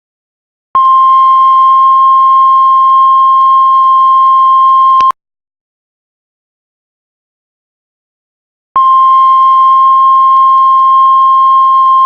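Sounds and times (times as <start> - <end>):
heart monitor continuous beep: 0.8 - 5.2, 8.8 - 12.0.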